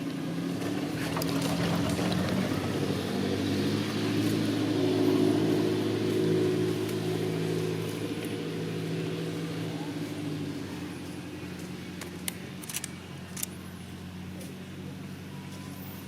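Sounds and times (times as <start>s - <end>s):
motor engine humming: 0.0s - 16.0s
sharp clicks: 12.0s - 13.6s.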